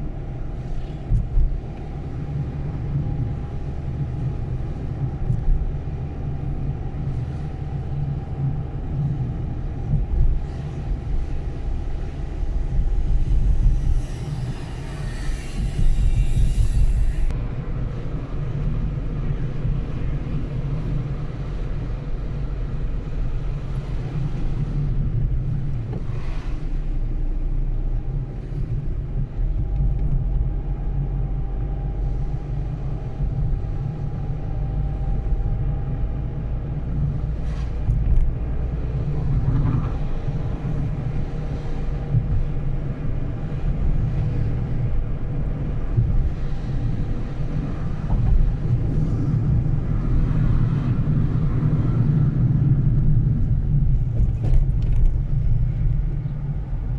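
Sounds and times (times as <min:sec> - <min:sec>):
car driving road and engine noise: 0:00.0 - 0:56.9.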